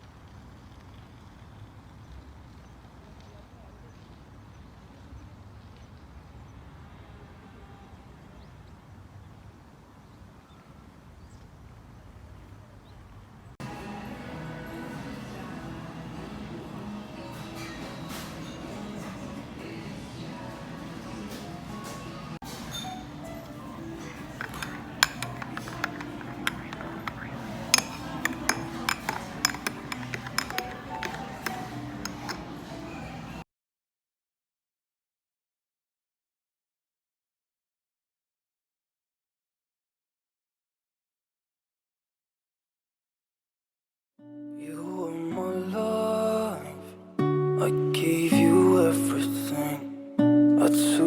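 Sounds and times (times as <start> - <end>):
soft background music: 13.6 - 33.4, 44.2 - 51.0
dishes and cutlery clinking: 16.4 - 33.4.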